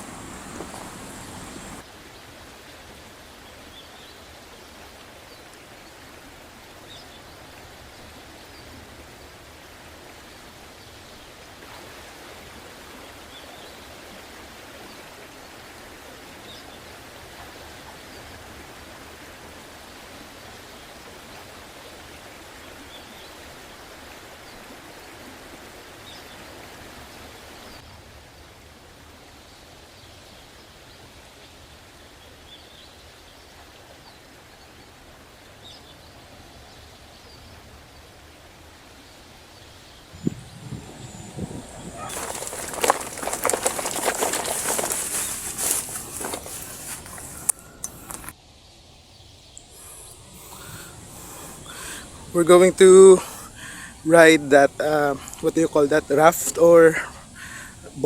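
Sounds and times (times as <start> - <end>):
river water rushing: 0.0 - 1.8, 42.0 - 48.3, 49.7 - 57.8.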